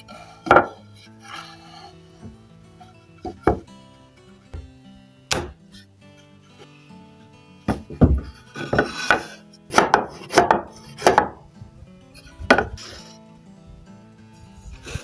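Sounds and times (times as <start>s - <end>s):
board and tools knocking: 0.5s - 0.8s, 7.7s - 11.4s, 12.5s - 12.7s.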